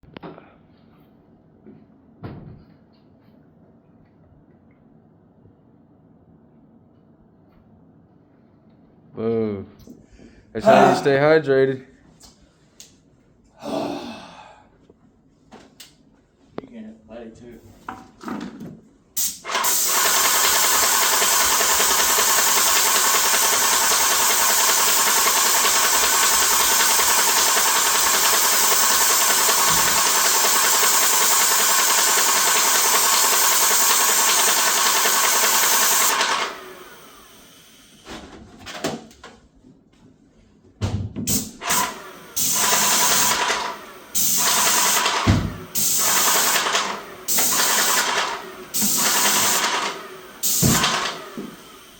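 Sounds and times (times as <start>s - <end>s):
paint sprayer pump running: 19.2s - 37.8s, 41.3s - 51.9s.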